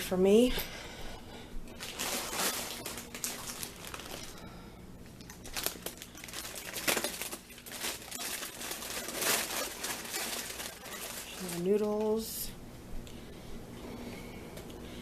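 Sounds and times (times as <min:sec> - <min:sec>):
plastic packaging crinkling: 0:01.8 - 0:04.5, 0:05.2 - 0:12.3.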